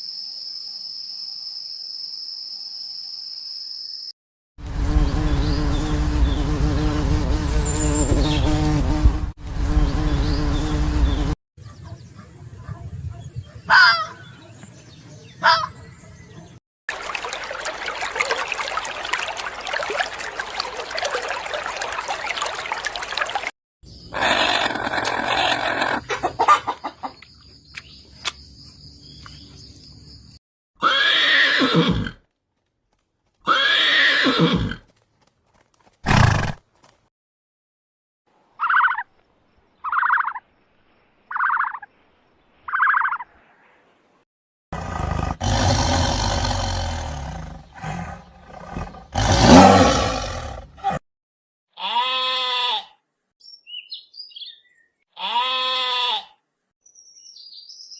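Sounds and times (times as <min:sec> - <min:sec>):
animal calls: 0:38.6 - 0:39.1.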